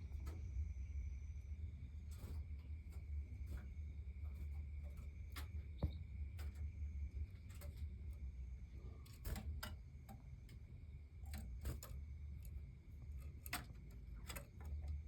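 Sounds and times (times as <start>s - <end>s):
low steady hum: 0.0s - 15.0s
bird moving in cage clicking: 9.0s - 10.6s, 11.2s - 15.0s.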